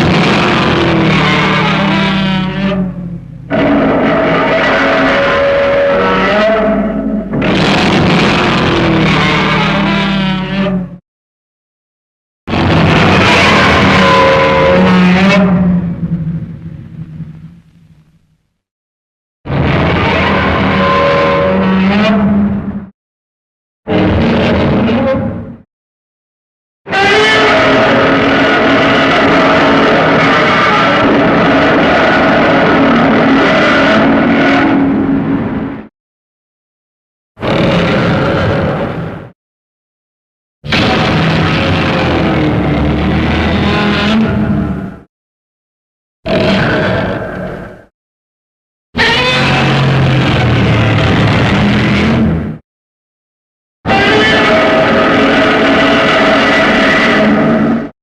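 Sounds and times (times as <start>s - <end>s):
harsh rasping sound effect: 49.0s - 52.4s.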